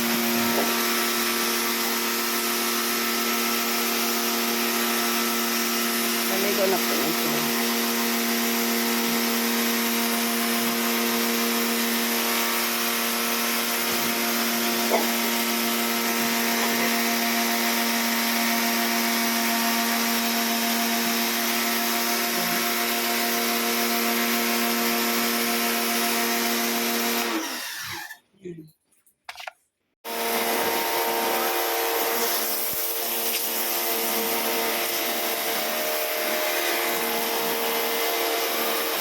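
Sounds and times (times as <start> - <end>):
pressure washer motor hum: 0.0 - 28.1, 29.3 - 39.0.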